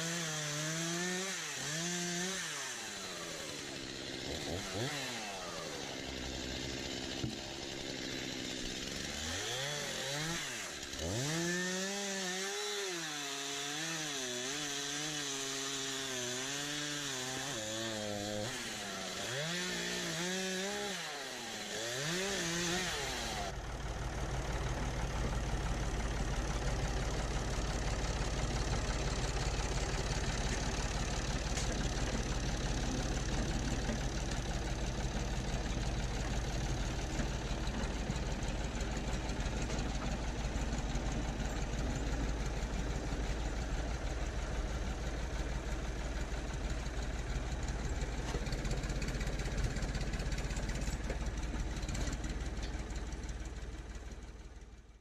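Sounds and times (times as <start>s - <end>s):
backhoe engine running: 2.2s - 12.4s, 21.5s - 55.0s.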